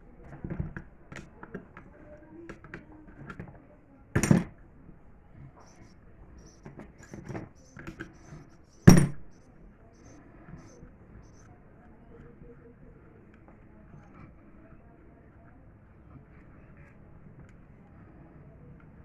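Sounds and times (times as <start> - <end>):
hard objects clicking and rattling: 4.2 - 4.6, 6.6 - 9.4
loud sharp knocks: 8.9 - 9.3.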